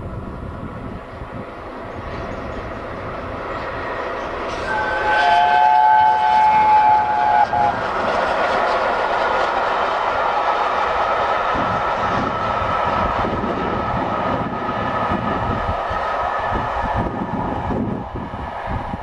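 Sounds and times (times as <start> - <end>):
passing train rumble: 0.0 - 19.0
steam locomotive whistle: 4.6 - 7.9.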